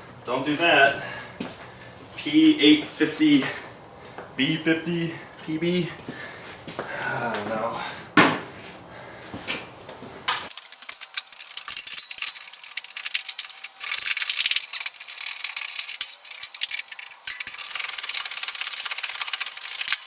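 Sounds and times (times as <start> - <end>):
hand tools clicking and rattling: 10.5 - 20.0.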